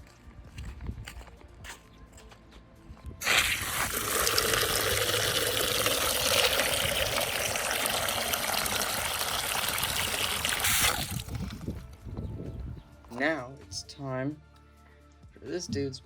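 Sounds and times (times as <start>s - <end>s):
water gushing into container: 3.2s - 11.7s.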